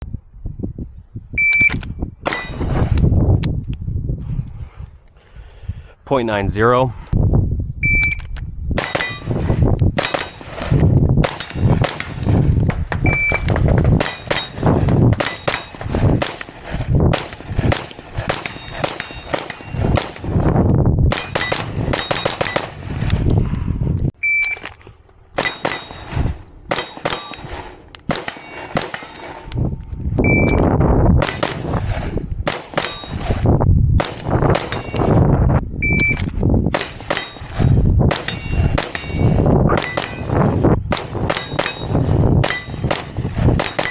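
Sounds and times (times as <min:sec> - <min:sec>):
shot timer beeps: 0:01.4 - 0:01.8, 0:07.8 - 0:08.3, 0:13.0 - 0:13.5, 0:24.2 - 0:24.7, 0:30.2 - 0:30.7, 0:35.8 - 0:36.3
rifle shots: 0:01.6 - 0:02.9, 0:08.8 - 0:20.5, 0:21.1 - 0:23.0, 0:25.4 - 0:29.5, 0:31.2 - 0:33.4, 0:35.9 - 0:43.9
steel targets ringing: 0:28.2 - 0:29.4.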